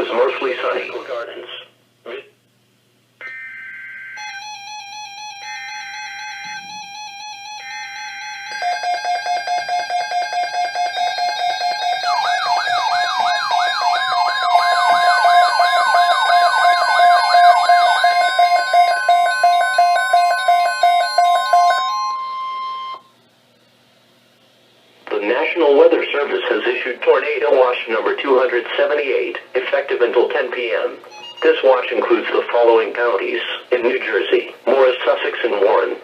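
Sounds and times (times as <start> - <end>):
warbling alarm tone: 3.2 - 23.1, 31.1 - 32.1
fast pulsing beep: 14.5 - 23.0.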